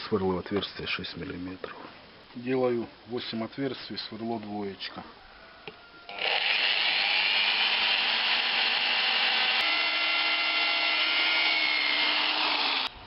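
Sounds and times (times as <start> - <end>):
drill click: 6.1 - 13.0
electric drill whining: 6.1 - 13.0.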